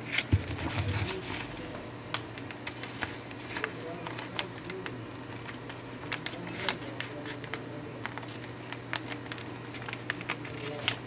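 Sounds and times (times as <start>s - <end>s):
steady low hum: 0.0s - 11.0s
paper being folded and creased: 2.4s - 11.0s.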